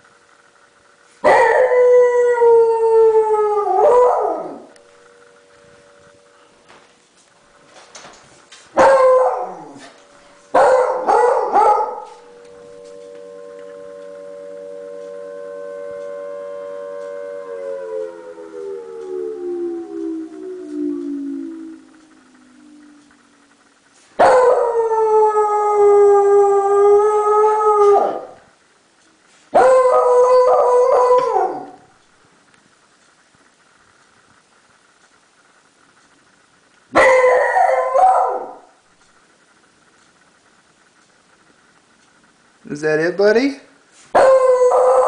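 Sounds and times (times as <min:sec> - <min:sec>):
tornado siren steady tone: 0:00.0 - 0:45.0
dog barking and howling: 0:01.2 - 0:04.8, 0:08.8 - 0:12.9, 0:24.2 - 0:28.4, 0:29.6 - 0:32.0, 0:37.0 - 0:38.8, 0:44.2 - 0:45.0.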